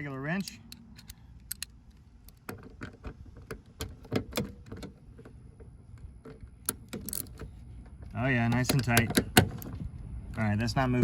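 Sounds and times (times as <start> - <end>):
wrench clicking on metal bolts: 0.4 - 2.7, 6.6 - 7.5, 8.4 - 9.7.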